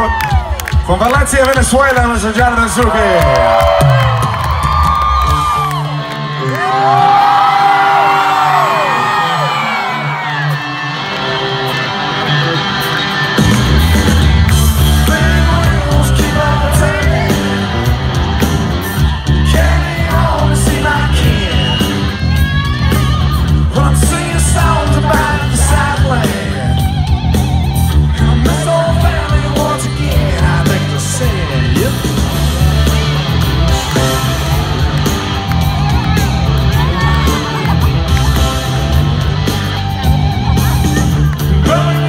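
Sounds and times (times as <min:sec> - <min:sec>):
live rock band: 0:00.0 - 0:42.0
bending electric guitar lead: 0:09.4 - 0:42.0.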